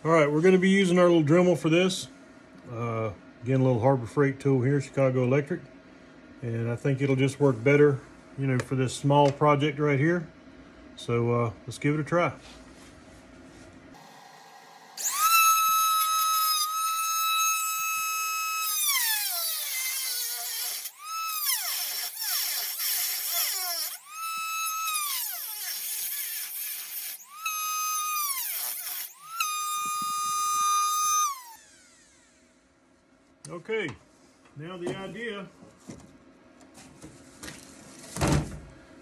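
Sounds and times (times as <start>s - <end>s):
rotary tool cutting sheet metal: 14.0s - 32.1s.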